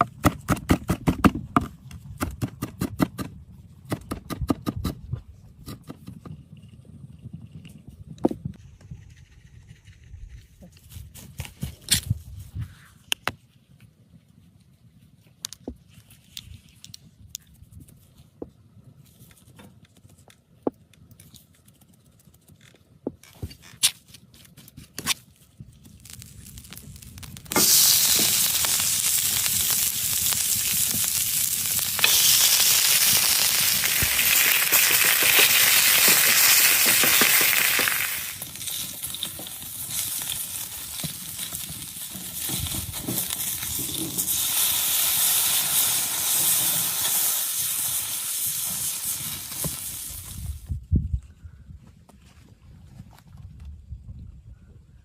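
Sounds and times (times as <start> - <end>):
steak sizzling: 26.0 - 50.5.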